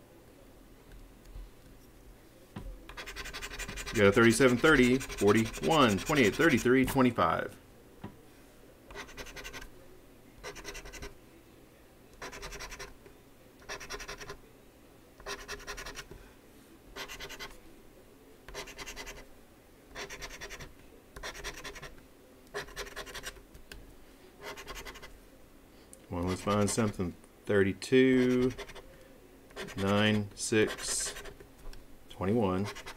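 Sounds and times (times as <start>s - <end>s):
scratching lottery ticket: 2.9s - 6.7s, 8.9s - 9.7s, 10.4s - 11.1s, 12.2s - 13.0s, 13.6s - 14.4s, 15.2s - 16.1s, 17.0s - 17.6s, 18.5s - 19.2s, 19.9s - 23.4s, 24.4s - 25.1s, 26.2s - 27.0s, 28.1s - 31.4s, 32.6s - 32.9s.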